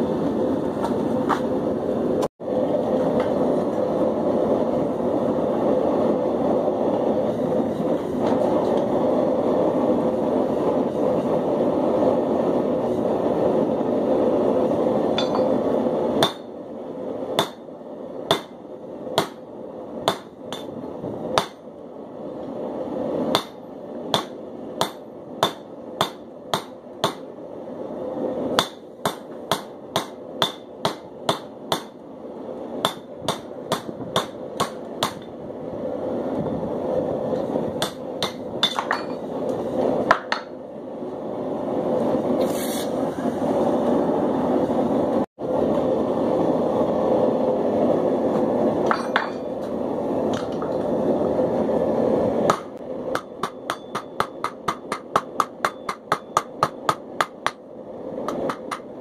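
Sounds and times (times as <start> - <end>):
hammer striking steel on anvil: 15.1 - 15.6, 16.2 - 16.5, 17.4 - 17.7, 18.3 - 18.6, 19.2 - 20.7, 21.4 - 21.6, 23.3 - 27.3, 28.6 - 32.0, 32.8 - 35.3, 37.8 - 39.2, 48.8 - 49.7, 52.5 - 57.6.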